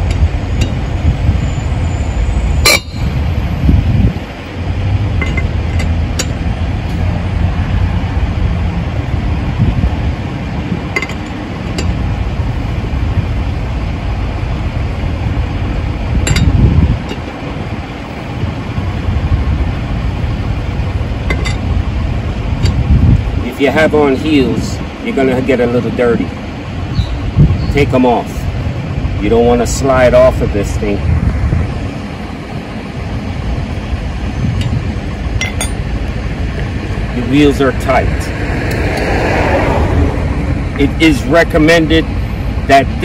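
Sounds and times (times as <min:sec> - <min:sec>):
low rumble: 0:00.0 - 0:23.6, 0:26.2 - 0:42.7
wrench clinking on lug nuts: 0:05.1 - 0:06.4, 0:10.9 - 0:12.0, 0:16.2 - 0:17.3, 0:21.3 - 0:21.7, 0:35.4 - 0:35.8.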